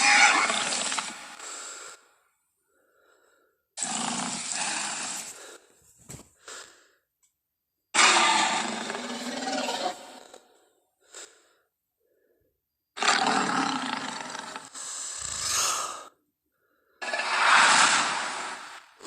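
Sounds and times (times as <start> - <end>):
dinosaur roar: 0.0 - 1.5, 8.0 - 10.5, 13.0 - 16.0, 17.0 - 19.0.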